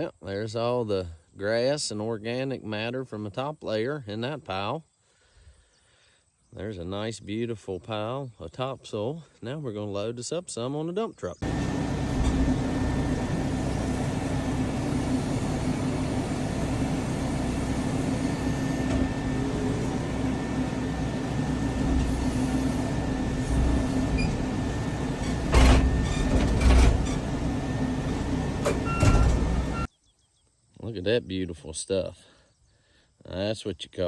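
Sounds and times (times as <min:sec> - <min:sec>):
diesel engine running under load: 0:11.4 - 0:29.9.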